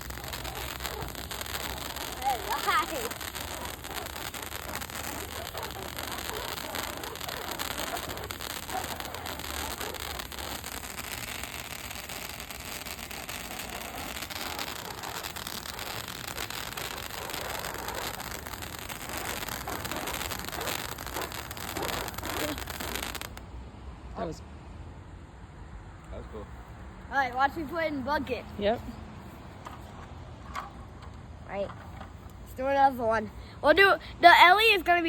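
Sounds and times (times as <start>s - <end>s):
firework fountain crackling hiss: 0.0s - 23.4s, 32.2s - 35.0s.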